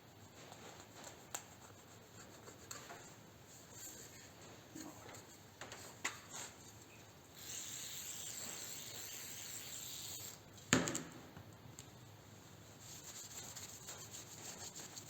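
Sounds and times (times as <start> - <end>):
aerosol can spraying hiss: 7.4 - 10.4.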